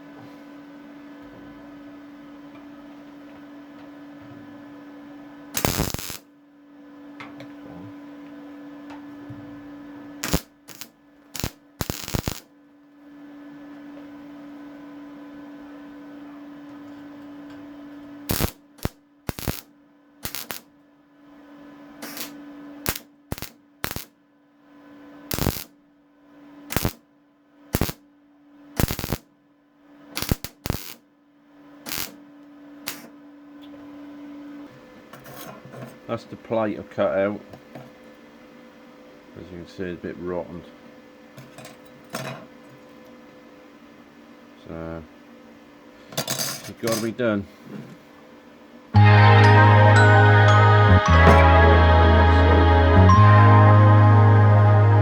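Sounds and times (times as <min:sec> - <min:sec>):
steady hum: 0:05.6 - 0:06.2, 0:10.2 - 0:12.4, 0:49.0 - 0:55.0
welding arc crackle: 0:05.6 - 0:06.2, 0:10.2 - 0:12.5, 0:18.3 - 0:20.7, 0:22.0 - 0:24.1, 0:25.3 - 0:25.7, 0:26.7 - 0:27.0, 0:27.8 - 0:28.0, 0:28.8 - 0:29.2, 0:30.2 - 0:31.0, 0:31.9 - 0:32.2, 0:32.9 - 0:33.1.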